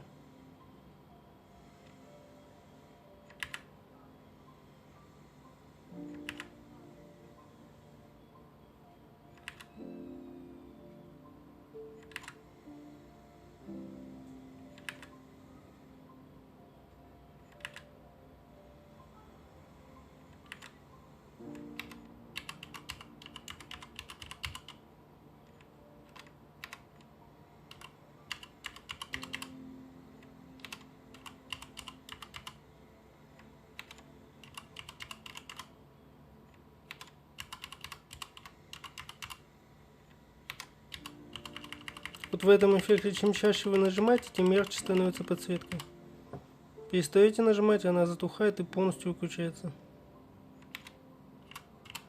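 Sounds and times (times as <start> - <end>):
mechanical keyboard keystrokes: 3.3 - 3.7, 6.1 - 6.5, 9.3 - 9.7, 12.0 - 12.4, 14.7 - 15.2, 17.4 - 17.9, 20.4 - 20.8, 21.5 - 24.8, 25.4 - 27.1, 27.7 - 29.6, 30.6 - 32.6, 33.4 - 35.7, 36.9 - 39.4, 40.5 - 45.9, 50.6 - 52.0.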